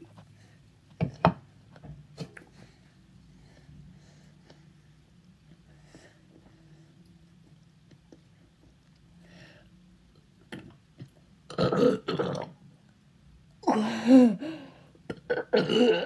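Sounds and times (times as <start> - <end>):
man burping loudly: 11.5 - 12.5.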